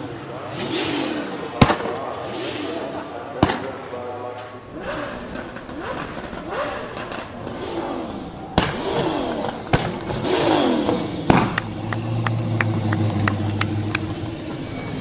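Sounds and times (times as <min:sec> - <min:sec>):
car engine revving: 0:00.0 - 0:03.3, 0:04.6 - 0:15.0
car engine idling: 0:04.6 - 0:15.0
exhaust backfire bangs: 0:04.7 - 0:14.5
exhaust crackling pops: 0:04.8 - 0:14.2.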